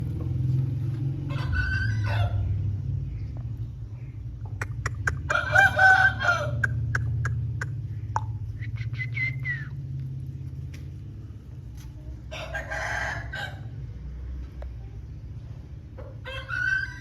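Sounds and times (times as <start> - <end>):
rooster crowing: 1.3 - 2.6, 5.3 - 6.7, 12.3 - 13.8, 16.2 - 17.0.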